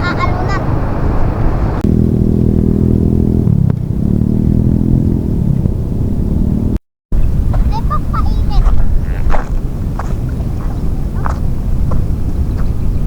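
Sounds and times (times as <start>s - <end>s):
motorcycle engine running: 1.8s - 6.8s.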